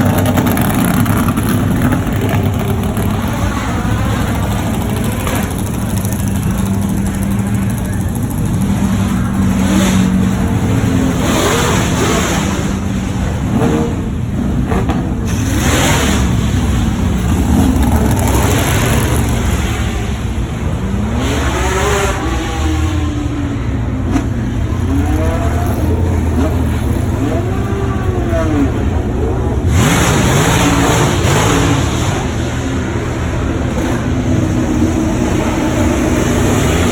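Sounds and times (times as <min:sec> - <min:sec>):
car engines revving hard: 0:00.0 - 0:36.9
low engine drone: 0:00.0 - 0:36.9.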